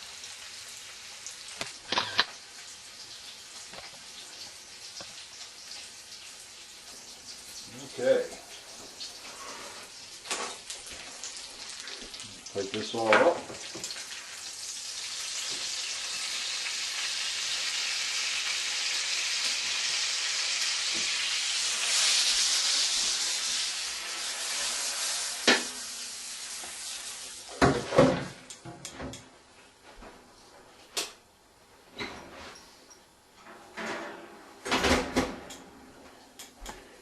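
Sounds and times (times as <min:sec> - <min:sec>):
steak sizzling in a pan: 0:00.0 - 0:27.6.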